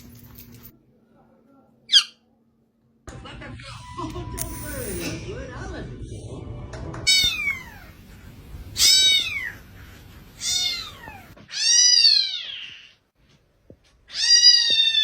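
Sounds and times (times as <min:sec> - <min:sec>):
cat meowing: 0:07.1 - 0:08.0, 0:08.8 - 0:09.6, 0:10.4 - 0:13.0, 0:14.1 - 0:15.0.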